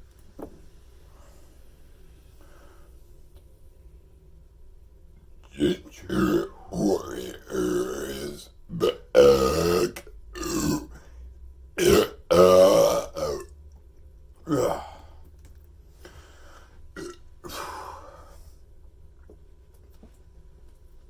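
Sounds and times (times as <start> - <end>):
person burping: 5.6 - 11.0, 11.8 - 13.6, 14.4 - 15.2, 17.0 - 18.0.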